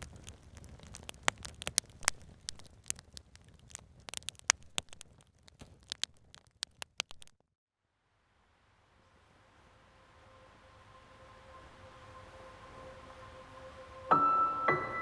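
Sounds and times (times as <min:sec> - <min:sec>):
campfire crackling and popping: 0:00.0 - 0:07.5.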